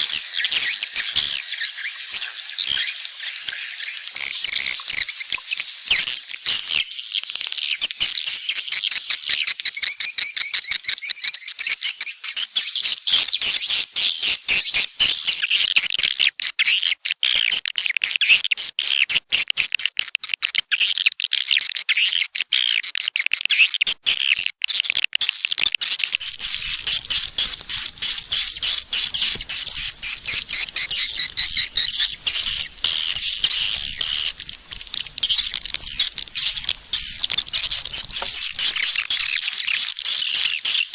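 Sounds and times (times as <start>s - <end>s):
swiftlets twittering: 26.1s - 40.5s.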